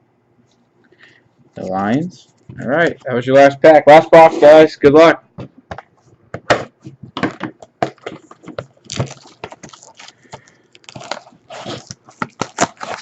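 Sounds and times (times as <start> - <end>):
wrapping and cardboard crackling: 7.9 - 13.0
box being torn open: 10.8 - 13.0.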